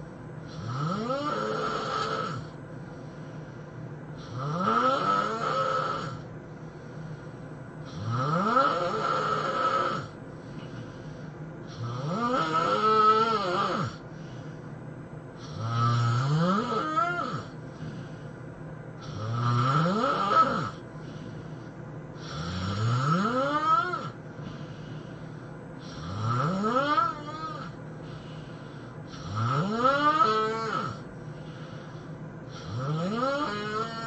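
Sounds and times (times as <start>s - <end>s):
man snoring loudly: 0.5s - 2.6s, 4.2s - 6.2s, 7.8s - 10.2s, 11.7s - 14.0s, 15.4s - 17.6s, 19.0s - 20.8s, 22.2s - 24.2s, 25.8s - 27.8s, 29.1s - 31.1s, 32.5s - 34.0s.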